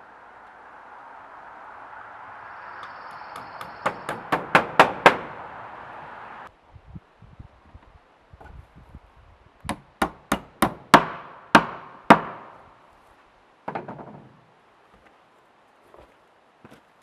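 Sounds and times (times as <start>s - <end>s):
hammer driving nail into wood: 3.3s - 5.4s, 9.7s - 12.5s.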